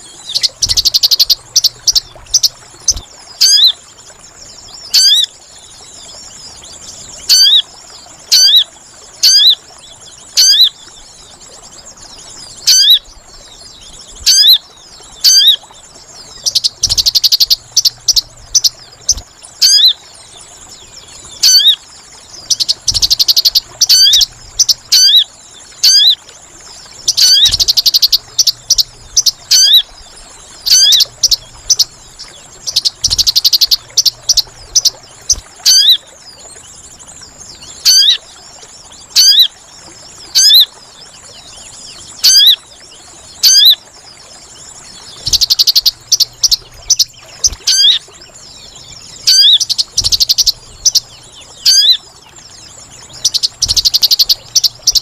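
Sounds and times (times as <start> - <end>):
rapid chattering bird trills: 0.0 - 3.7, 16.4 - 19.9, 22.5 - 25.2, 27.1 - 29.8, 30.7 - 31.9, 32.7 - 36.0, 45.2 - 48.0, 49.2 - 51.1, 53.2 - 55.0
songbird call notes: 0.0 - 55.0.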